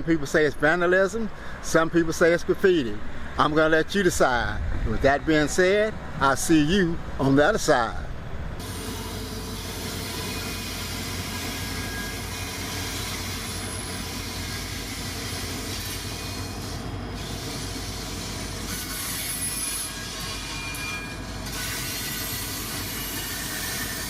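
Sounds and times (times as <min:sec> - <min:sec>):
train wheels on rails: 0:08.6 - 0:24.0.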